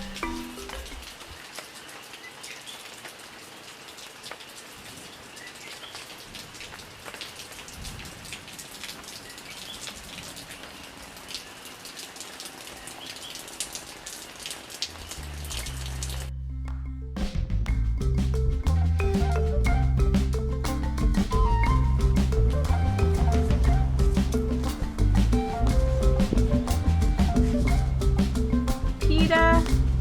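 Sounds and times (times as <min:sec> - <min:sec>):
steady rainfall: 0:00.0 - 0:16.3, 0:17.8 - 0:30.0
rain drop hits: 0:00.0 - 0:30.0
music with low bass notes: 0:15.2 - 0:30.0.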